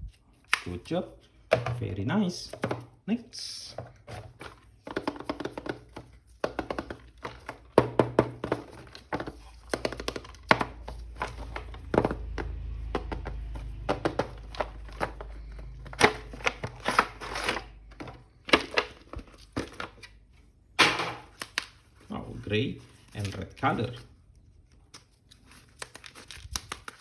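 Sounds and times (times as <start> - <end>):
plastic packaging crinkling: 24.6 - 27.0.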